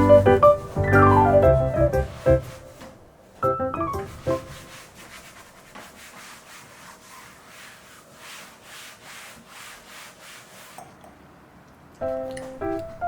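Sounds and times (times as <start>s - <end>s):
soft background music: 0.0s - 2.8s, 3.4s - 4.6s, 12.0s - 13.0s
rhythmic rubbing strokes: 0.0s - 10.7s.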